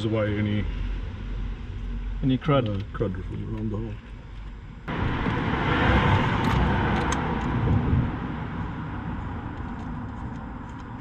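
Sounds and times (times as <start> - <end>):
car engine turning over: 4.9 - 11.0.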